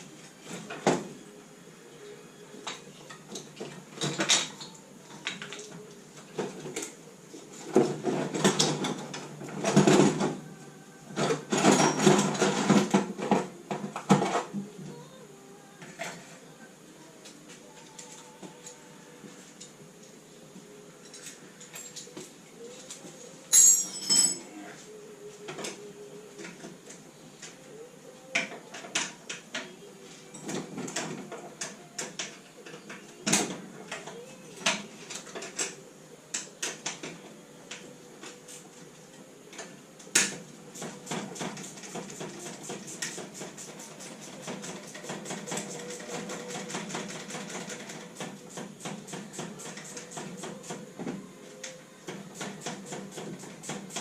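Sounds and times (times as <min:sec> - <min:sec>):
hand tools clinking on metal: 0:23.5 - 0:24.5.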